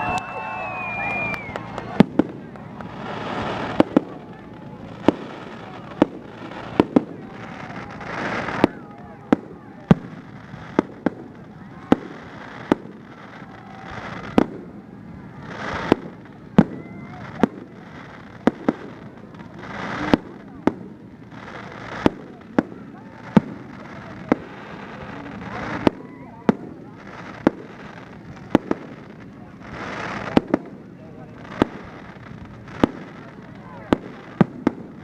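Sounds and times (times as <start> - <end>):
firework crackle: 0.0 - 35.0.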